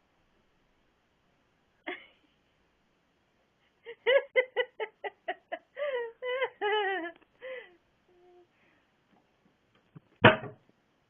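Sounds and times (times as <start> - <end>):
person laughing: 3.9 - 7.7.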